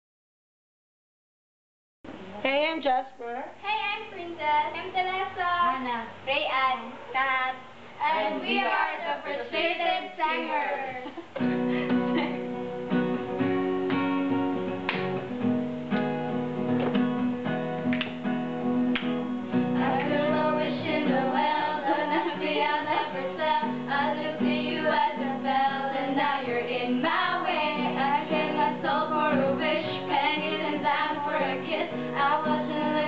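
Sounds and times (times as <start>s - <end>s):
people singing: 8.0s - 11.2s, 19.5s - 33.0s
acoustic guitar strumming: 11.4s - 33.0s.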